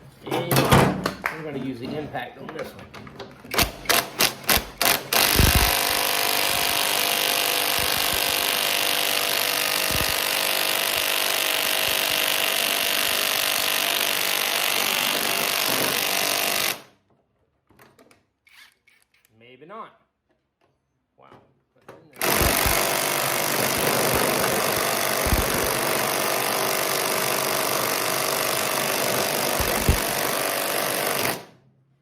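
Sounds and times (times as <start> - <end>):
impact wrench hammering: 3.5 - 16.8, 22.2 - 31.5.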